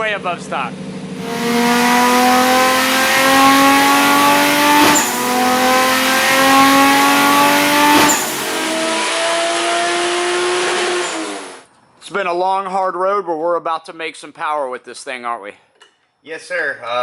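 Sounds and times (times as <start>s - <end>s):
car engine revving on dyno: 1.2s - 11.7s.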